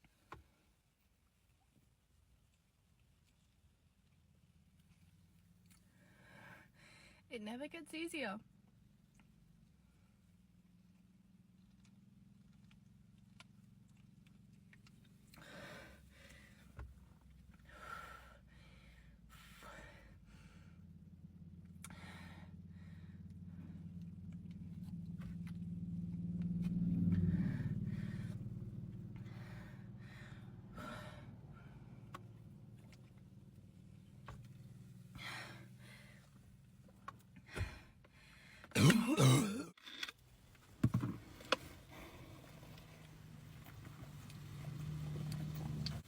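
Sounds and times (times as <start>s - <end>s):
woman breathing heavily: 6.0s - 7.3s, 15.3s - 16.8s, 17.6s - 20.9s, 21.9s - 23.9s, 27.3s - 32.5s, 35.1s - 36.4s, 37.4s - 39.7s
low hum: 20.3s - 36.3s
woman belching loudly: 38.8s - 39.7s
woman gulping soda: 38.8s - 39.7s.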